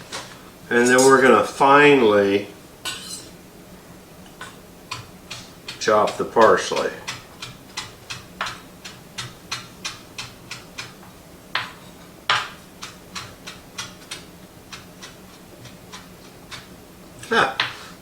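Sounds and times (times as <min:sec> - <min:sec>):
knife chopping on cutting board: 0:04.4 - 0:17.9.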